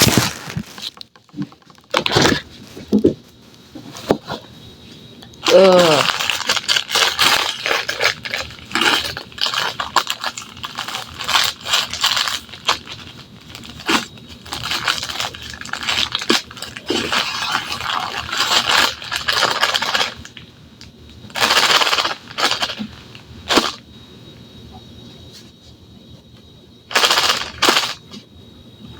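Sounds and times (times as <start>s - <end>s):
packaging crinkling: 0.0s - 2.4s, 5.4s - 20.4s, 21.3s - 23.8s, 26.9s - 28.0s.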